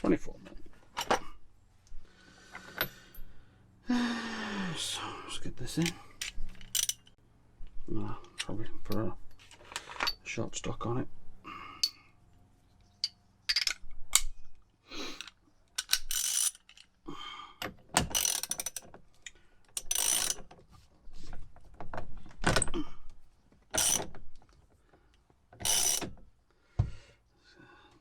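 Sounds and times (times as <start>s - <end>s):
ratchet wrench clicking: 6.6s - 7.1s, 15.8s - 16.8s, 18.1s - 18.8s, 19.8s - 20.4s, 23.8s - 24.1s, 25.6s - 26.1s.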